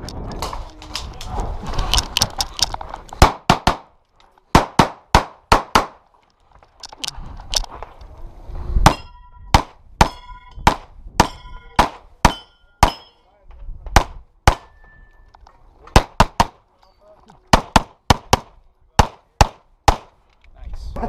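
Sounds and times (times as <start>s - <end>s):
steel targets ringing: 8.9s - 9.4s, 10.0s - 13.3s.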